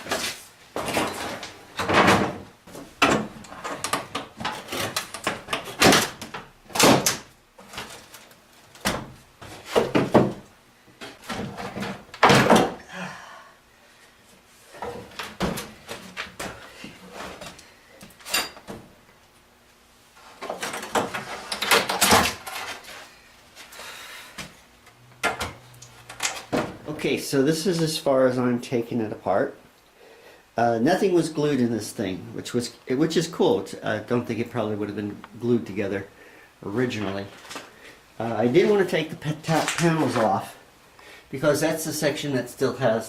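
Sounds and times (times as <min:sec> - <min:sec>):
wooden knocks and bangs: 0:08.8 - 0:12.8.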